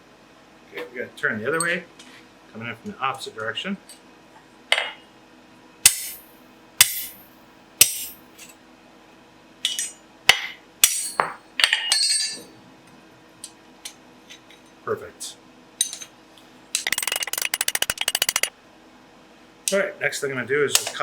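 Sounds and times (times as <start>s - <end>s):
hammer striking steel on anvil: 5.8s - 8.2s, 10.8s - 12.4s.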